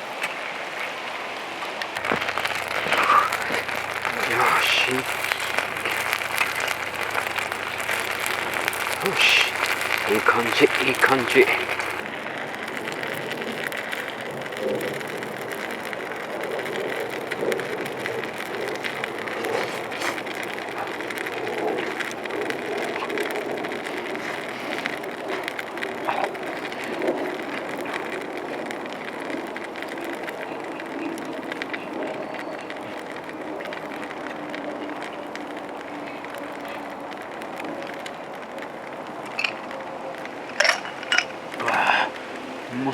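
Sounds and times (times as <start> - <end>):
campfire pops and crackles: 0.0 - 42.9
food sizzling in a pan: 2.0 - 27.8.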